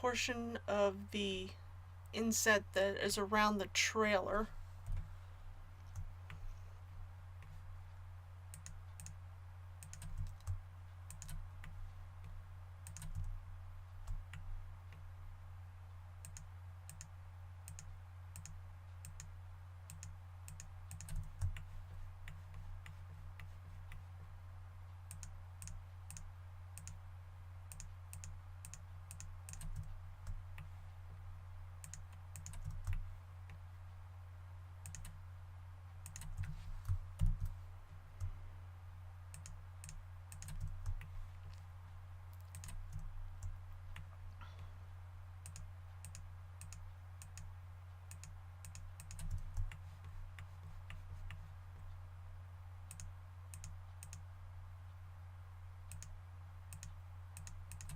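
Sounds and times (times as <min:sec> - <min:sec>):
steady low hum: 0:00.0 - 0:57.9
computer mouse and keyboard clicking: 0:08.5 - 0:09.2, 0:09.8 - 0:13.4, 0:19.9 - 0:24.0, 0:27.7 - 0:30.7, 0:31.8 - 0:33.1, 0:34.8 - 0:35.2, 0:36.0 - 0:37.6, 0:39.3 - 0:41.6, 0:42.3 - 0:44.1, 0:48.1 - 0:51.4, 0:56.7 - 0:57.9.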